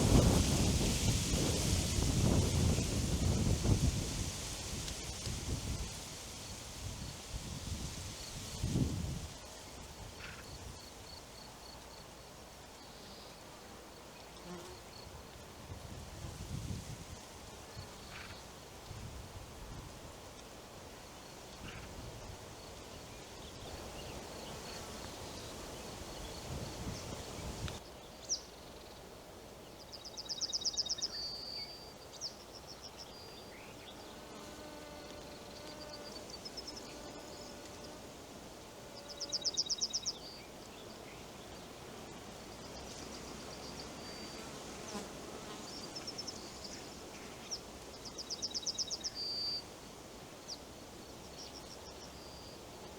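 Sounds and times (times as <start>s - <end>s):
wind rumble and rustling: 0.0s - 10.8s, 15.6s - 17.5s, 25.1s - 27.8s.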